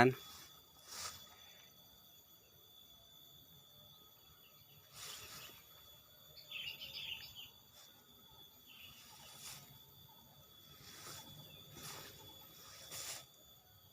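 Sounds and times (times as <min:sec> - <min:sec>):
high-pitched hum: 0:00.0 - 0:13.9
bird chirping: 0:03.9 - 0:12.9.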